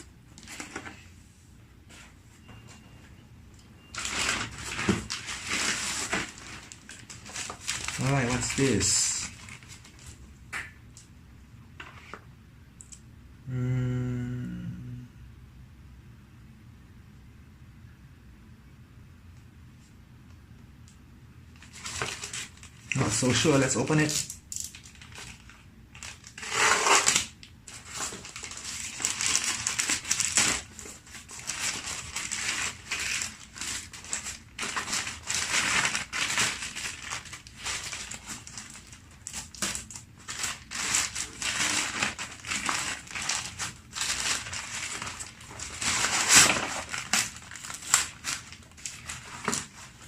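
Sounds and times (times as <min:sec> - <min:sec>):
packaging crinkling and tearing: 0:03.9 - 0:10.2, 0:21.6 - 0:50.0.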